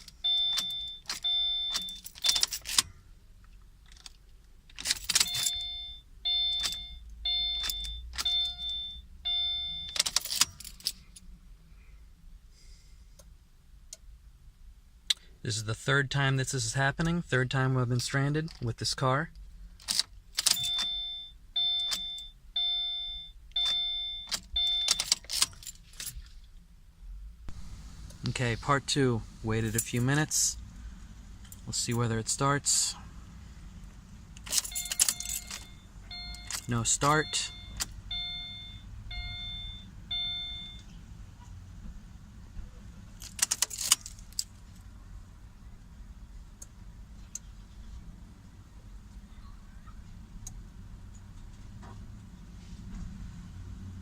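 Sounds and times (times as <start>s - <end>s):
car warning chime: 0.0s - 2.6s, 5.1s - 10.6s, 20.4s - 25.2s, 34.5s - 41.0s
keys jangling: 0.0s - 2.8s, 3.9s - 5.6s, 9.9s - 11.2s, 23.6s - 26.4s, 34.4s - 36.7s, 43.2s - 44.6s.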